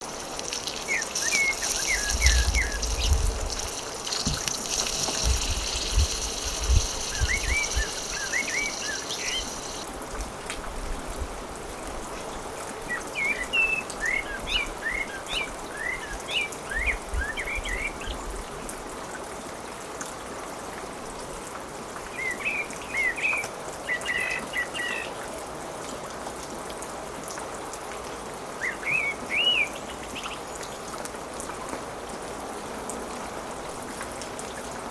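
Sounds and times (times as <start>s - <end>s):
steady high hiss: 0.0s - 9.9s
small birds chirping: 0.1s - 9.8s
low rumbles: 1.8s - 4.4s.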